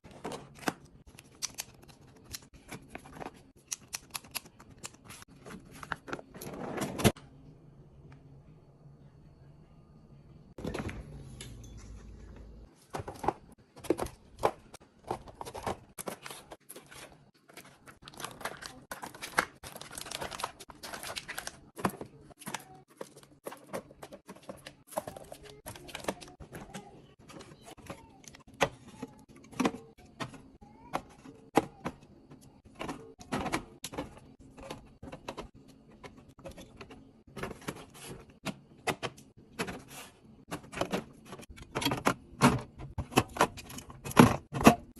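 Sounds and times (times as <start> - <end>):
packages and bottles clattering: 10.6 - 44.9
packaging rustling: 16.0 - 26.0.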